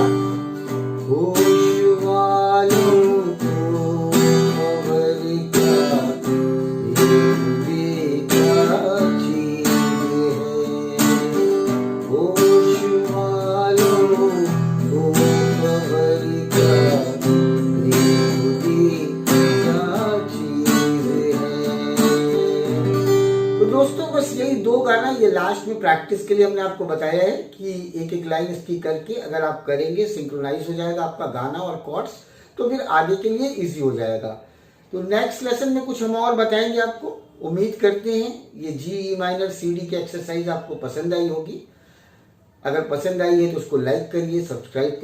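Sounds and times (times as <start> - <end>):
acoustic guitar strumming: 0.0 - 26.3.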